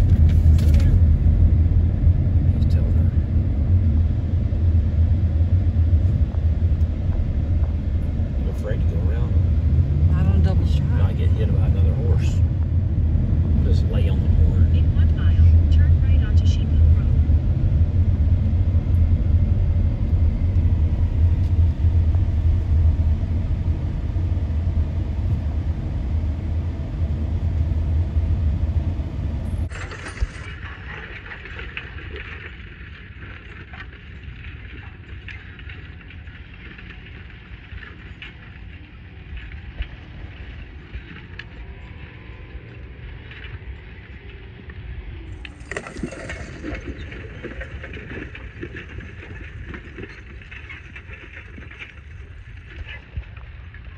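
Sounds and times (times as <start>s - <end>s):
car road rumble from inside: 0.0s - 53.9s.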